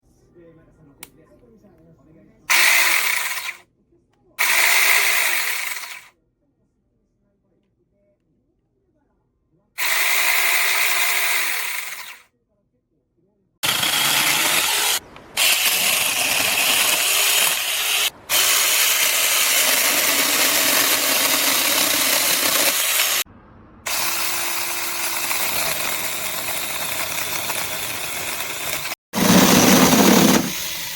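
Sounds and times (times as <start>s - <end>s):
electric chainsaw buzzing: 2.5s - 3.6s, 4.4s - 6.1s, 9.8s - 12.2s, 13.6s - 23.3s, 23.9s - 30.9s.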